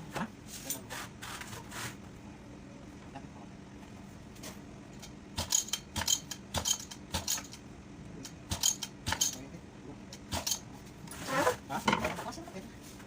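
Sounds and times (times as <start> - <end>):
metal parts clinking together: 5.4 - 7.6.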